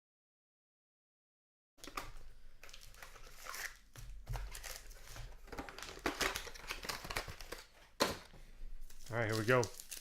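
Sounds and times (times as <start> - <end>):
foil wrapper crinkling and tearing: 2.6 - 7.7, 8.8 - 10.0.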